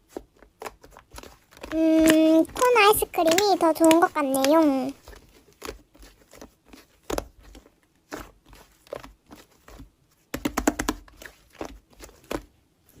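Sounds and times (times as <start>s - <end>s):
slime crackling and popping: 1.0s - 6.0s.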